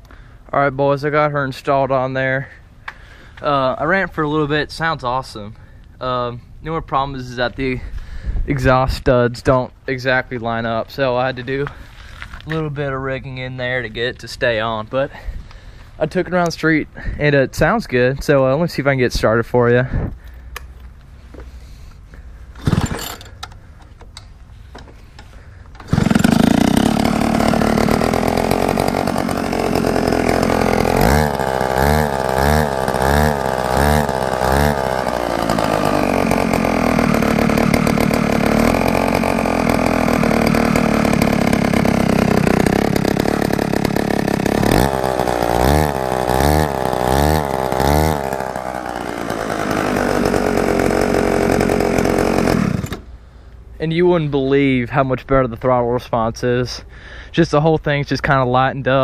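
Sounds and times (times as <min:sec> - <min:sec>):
scooter engine revving: 0:22.5 - 0:23.5, 0:25.8 - 0:53.1.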